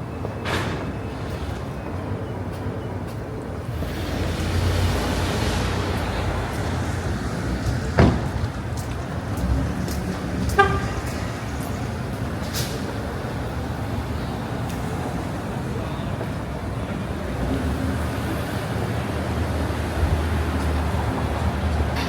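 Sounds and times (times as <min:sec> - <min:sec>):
traffic rumble: 0:00.0 - 0:22.0
car horn toot: 0:10.5 - 0:11.3.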